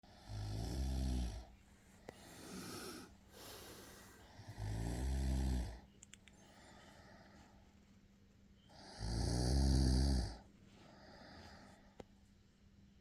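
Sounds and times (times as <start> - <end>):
boy snoring: 0.3 - 1.5, 2.3 - 5.8, 8.8 - 10.4
soft breathing: 1.7 - 4.8, 6.3 - 8.8, 10.6 - 12.3.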